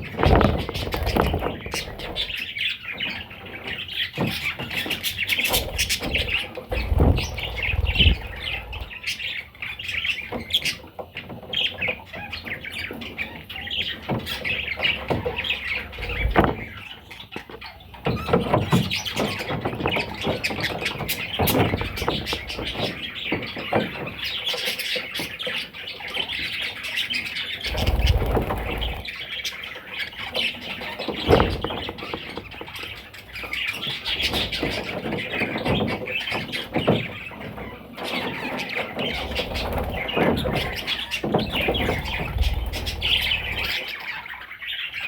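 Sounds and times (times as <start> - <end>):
dull thumps: 0.0 - 2.3, 5.4 - 8.9, 39.1 - 43.8
budgerigars chirping and chattering: 0.0 - 45.0.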